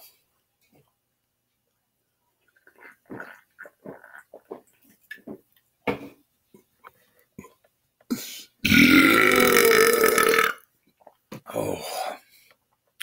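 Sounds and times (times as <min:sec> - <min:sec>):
man belching: 0:08.6 - 0:10.6.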